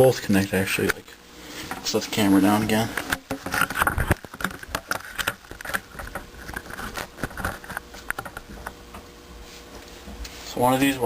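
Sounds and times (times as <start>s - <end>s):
wires and small parts rattling: 1.6s - 8.8s.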